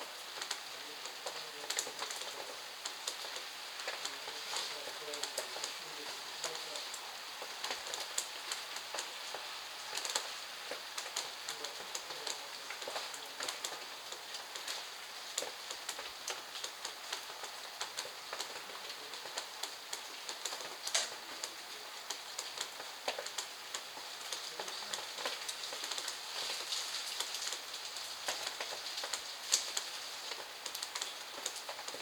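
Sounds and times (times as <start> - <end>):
steady rain: 0.0 - 32.0.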